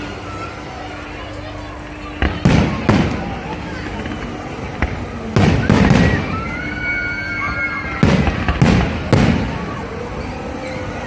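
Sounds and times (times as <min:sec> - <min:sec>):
fireworks bangs: 0:02.0 - 0:09.8
fireworks whistling: 0:02.0 - 0:11.0.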